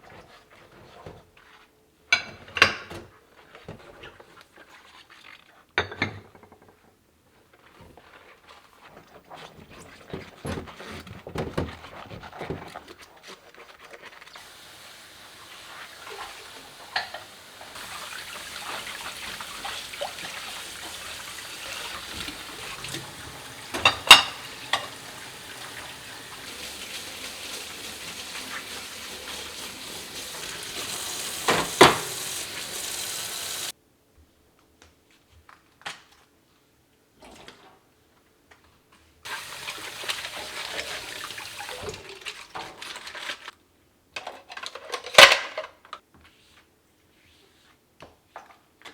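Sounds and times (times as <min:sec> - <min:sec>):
dishes and utensils clinking: 0:14.4 - 0:33.7
dishes clattering: 0:14.4 - 0:33.7, 0:39.3 - 0:41.8
tap water running: 0:14.4 - 0:33.7, 0:39.3 - 0:43.5.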